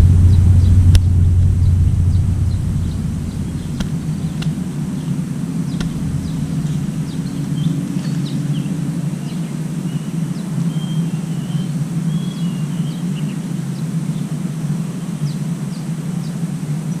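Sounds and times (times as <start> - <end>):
steady low rumble: 0.0 - 10.2
small birds chirping: 0.0 - 14.3.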